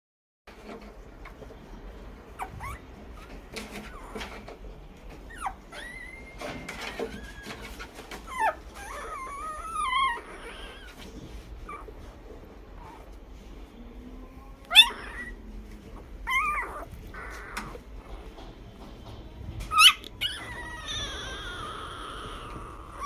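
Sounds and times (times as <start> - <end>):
puppy squeaking and whimpering: 2.3 - 12.2, 12.8 - 13.2, 14.6 - 18.1, 19.6 - 23.0.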